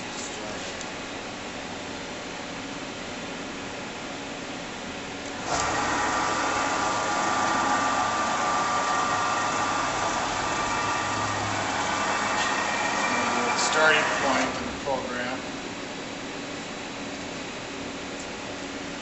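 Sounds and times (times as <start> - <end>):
lathe motors whining: 5.3 - 15.7.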